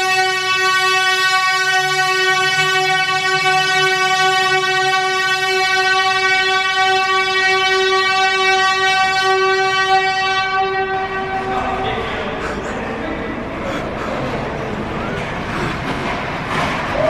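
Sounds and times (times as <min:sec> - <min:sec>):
air horn blast: 0:00.0 - 0:13.6.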